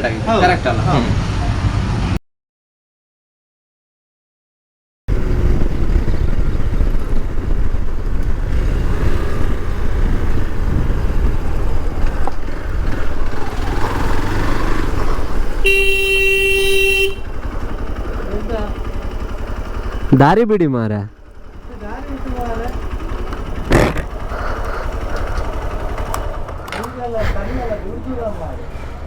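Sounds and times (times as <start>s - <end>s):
motorcycle engine and wind rumble: 5.1s - 20.4s, 21.1s - 29.0s
vehicle horn: 15.4s - 17.8s.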